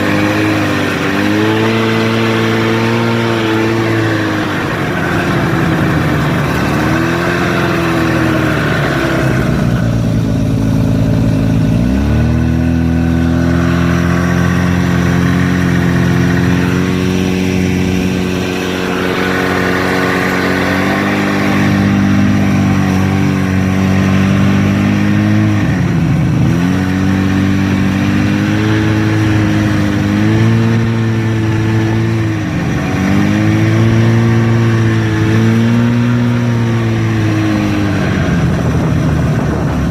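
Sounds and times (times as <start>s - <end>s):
snowmobile engine running: 0.0s - 39.9s.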